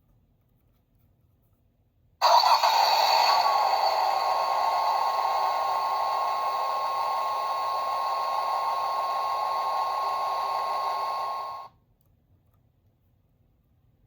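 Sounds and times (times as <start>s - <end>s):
high held tone: 2.2s - 11.7s
toy speaker rushing hiss: 2.2s - 11.7s.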